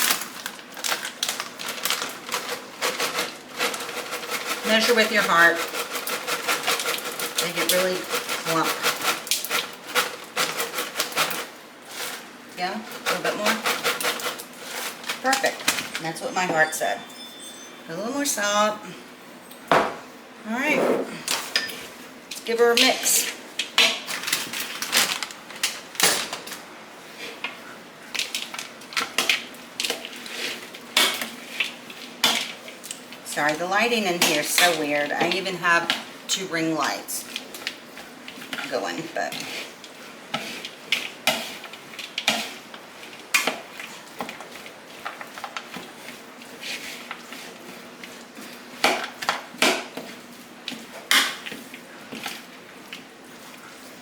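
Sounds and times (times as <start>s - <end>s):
utensil scraping in a bowl: 2.3s - 17.1s, 36.8s - 49.2s.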